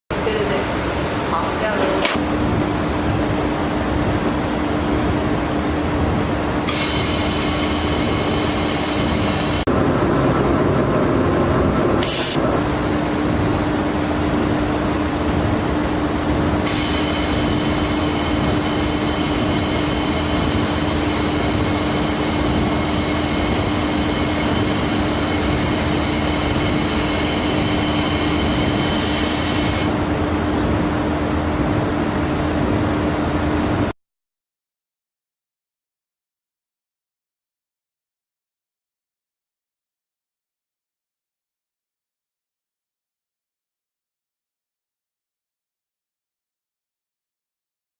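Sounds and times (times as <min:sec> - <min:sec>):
welding machine hum: 0:03.9 - 0:32.0
high-pitched whine: 0:06.6 - 0:30.0.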